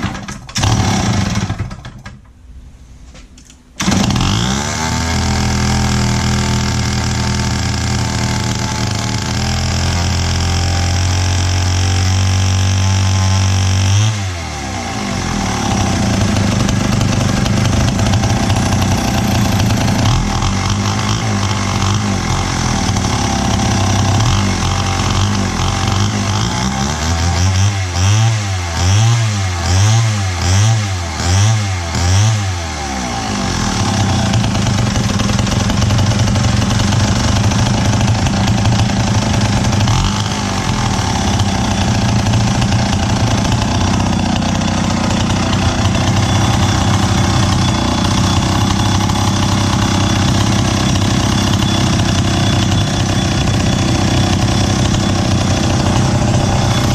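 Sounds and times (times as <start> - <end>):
chainsaw engine revving: 0.0 - 1.9, 3.8 - 56.9.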